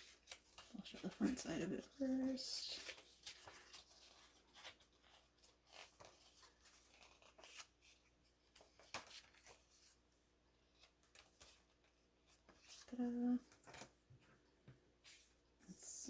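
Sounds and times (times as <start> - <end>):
paper rustling: 0.0 - 14.0.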